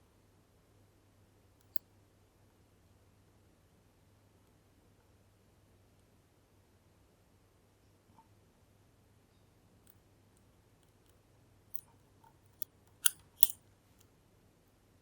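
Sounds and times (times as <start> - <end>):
lock clicking: 13.0 - 13.6
lock pick ticking: 13.0 - 13.6.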